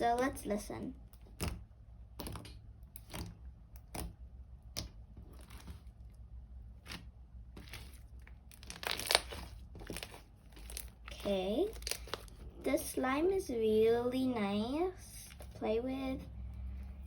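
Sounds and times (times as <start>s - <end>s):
slime popping and crackling: 6.8s - 12.5s.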